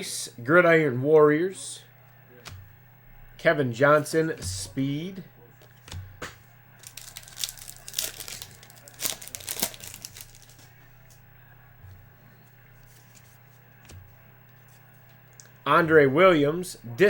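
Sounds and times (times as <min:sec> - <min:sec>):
faint steady hum: 0:00.0 - 0:17.0
card packaging crinkling: 0:06.8 - 0:10.7.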